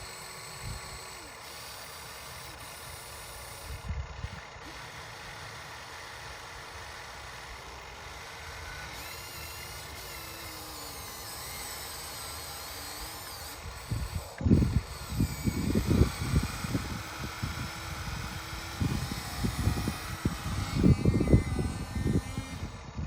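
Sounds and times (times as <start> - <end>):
small electric motor whirring: 0.0 - 23.0.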